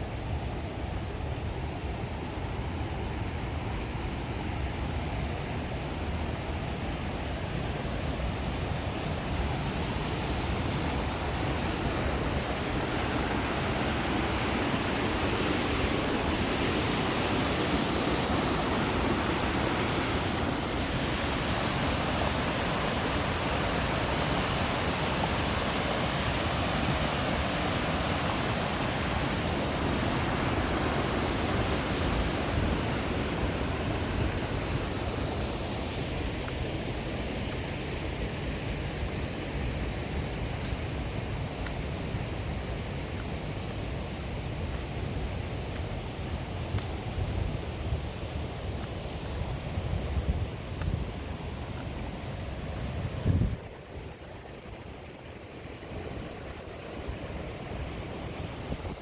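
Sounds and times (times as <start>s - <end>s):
waterfall rushing: 8.3s - 42.6s.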